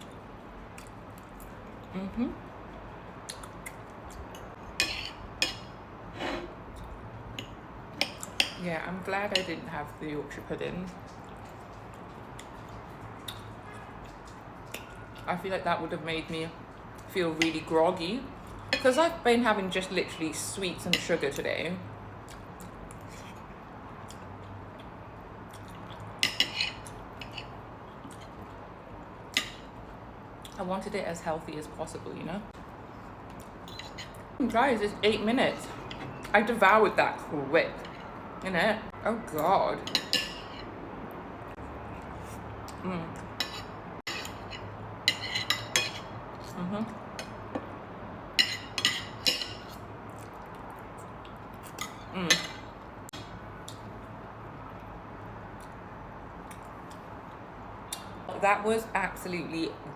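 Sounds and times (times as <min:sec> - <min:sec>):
cutlery clinking on a plate: 0:39.8 - 0:40.7, 0:48.4 - 0:49.8.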